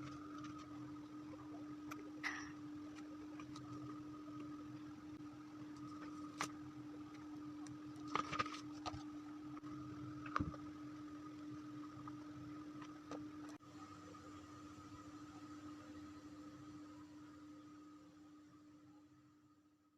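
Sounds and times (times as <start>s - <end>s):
steady low hum: 0.0s - 19.9s.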